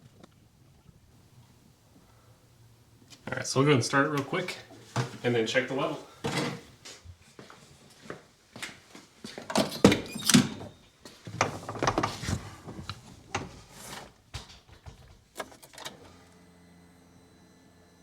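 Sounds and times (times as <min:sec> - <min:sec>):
truck door opening and shutting: 0:09.5 - 0:13.6, 0:15.1 - 0:16.2
clunks and knocks from handling: 0:11.3 - 0:16.0.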